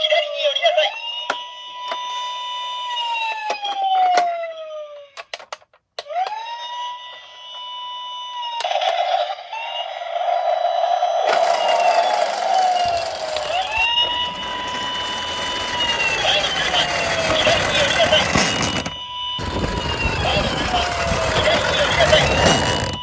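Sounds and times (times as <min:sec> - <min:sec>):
sharp plastic clicks: 0:05.2 - 0:06.4
toy siren wailing: 0:06.1 - 0:22.9.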